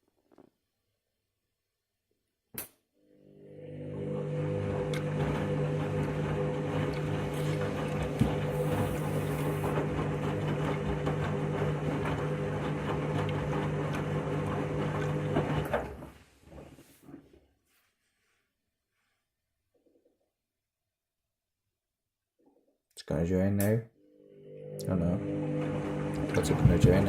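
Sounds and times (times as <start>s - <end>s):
washing machine spinning: 3.3s - 16.8s, 24.4s - 27.0s.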